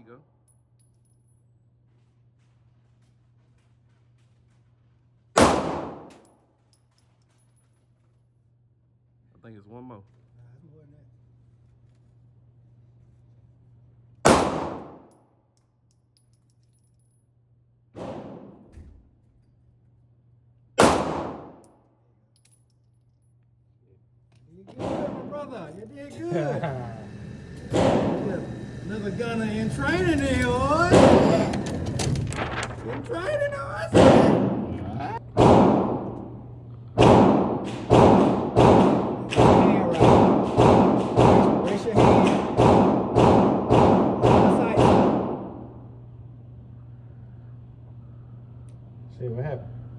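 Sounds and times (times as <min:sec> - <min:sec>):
gunshots with ringing tail: 0:05.4 - 0:06.2, 0:14.3 - 0:15.1, 0:18.0 - 0:18.7, 0:20.8 - 0:21.6, 0:24.8 - 0:31.6, 0:33.8 - 0:45.9
pistol shots: 0:05.4 - 0:06.2, 0:14.2 - 0:15.1, 0:18.0 - 0:18.7, 0:20.8 - 0:21.7, 0:24.8 - 0:25.6, 0:27.7 - 0:28.4, 0:33.9 - 0:36.4, 0:37.0 - 0:45.8.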